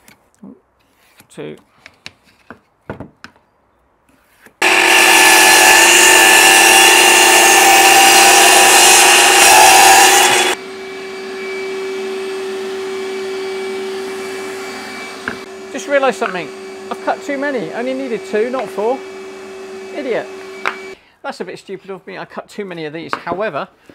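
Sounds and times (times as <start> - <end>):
dust extractor humming: 4.6 - 21.0
power saw cutting wood: 4.6 - 21.0.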